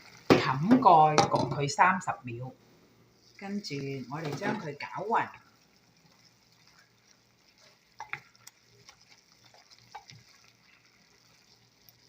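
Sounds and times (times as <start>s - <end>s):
spatula scraping a pot: 6.1s - 11.9s.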